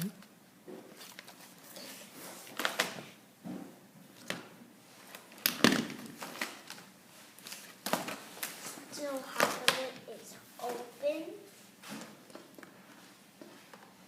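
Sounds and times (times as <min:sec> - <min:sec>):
packaging rustling: 0:05.0 - 0:08.8.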